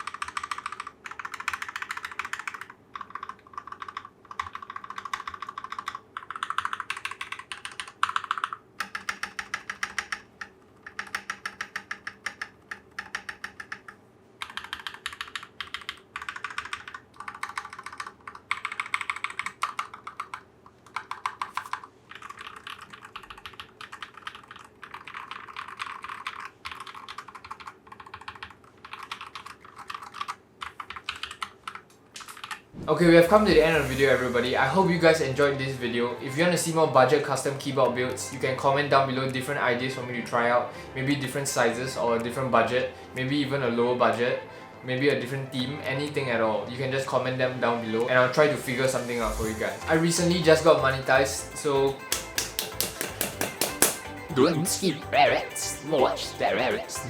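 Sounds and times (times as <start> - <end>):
mechanical keyboard typing: 0.0 - 32.6, 52.0 - 54.6.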